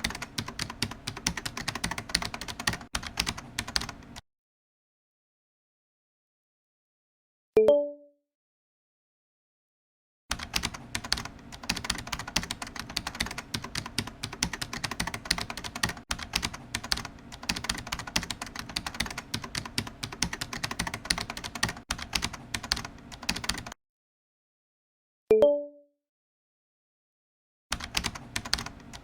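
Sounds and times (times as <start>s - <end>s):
computer keyboard typing: 0.0s - 4.2s, 10.3s - 23.8s, 27.7s - 29.0s.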